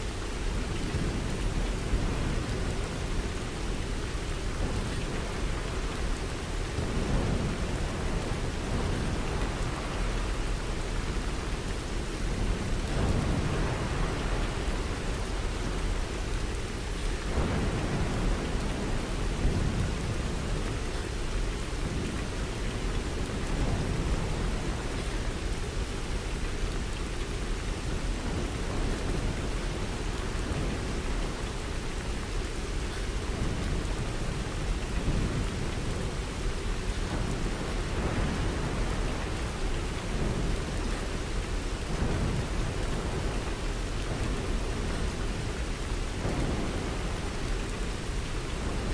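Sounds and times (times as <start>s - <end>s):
steady rain: 0.0s - 48.9s
thunder rumbles: 32.7s - 45.6s, 46.2s - 48.9s.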